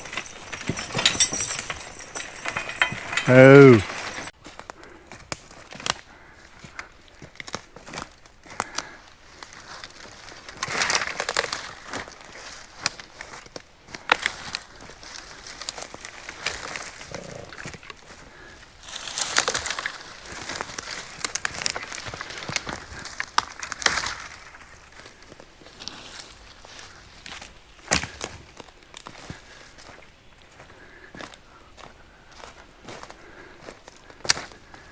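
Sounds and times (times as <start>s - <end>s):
footsteps through dry leaves: 18.8s - 23.3s.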